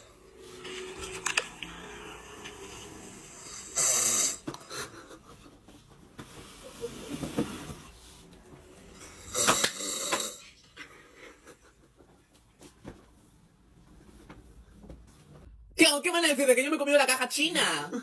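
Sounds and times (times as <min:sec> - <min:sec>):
man snoring: 0:01.6 - 0:04.5, 0:09.0 - 0:10.5
hissing breath: 0:01.8 - 0:04.9.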